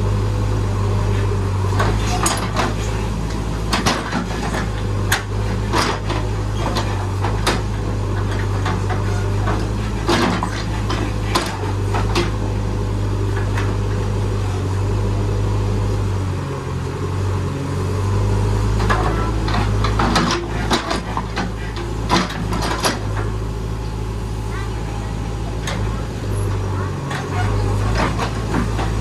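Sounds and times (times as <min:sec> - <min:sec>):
diesel engine droning: 0:00.0 - 0:29.0
machine knocks and clanks: 0:01.7 - 0:12.6, 0:18.7 - 0:23.4, 0:25.2 - 0:29.0.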